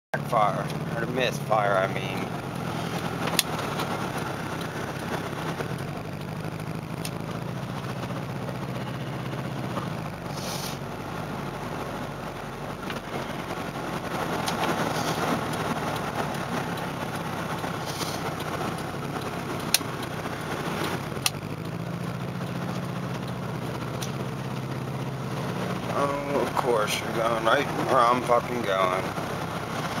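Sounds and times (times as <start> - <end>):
car engine running: 0.1 - 30.0
road noise: 0.1 - 30.0
sharp clicks: 2.5 - 6.4, 14.2 - 24.9.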